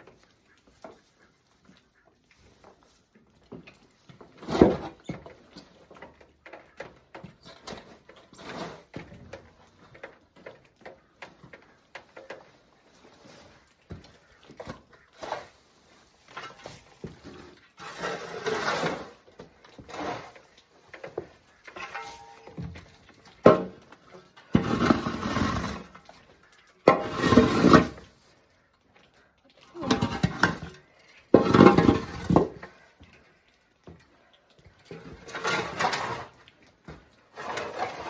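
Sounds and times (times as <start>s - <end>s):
scraping rustle: 7.4s - 10.2s, 11.2s - 23.3s, 24.2s - 28.4s, 34.9s - 38.0s.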